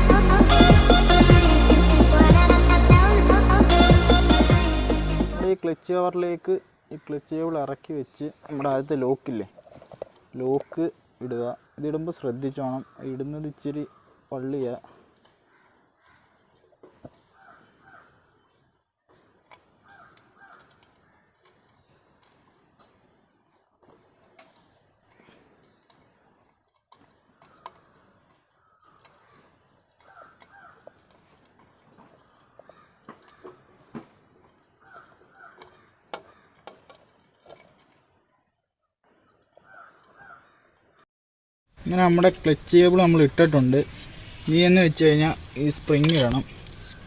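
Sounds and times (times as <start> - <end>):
crow cawing: 11.5 - 16.6, 17.2 - 18.4, 19.7 - 21.5, 27.3 - 31.4, 32.0 - 34.0, 34.6 - 36.9, 39.6 - 41.0.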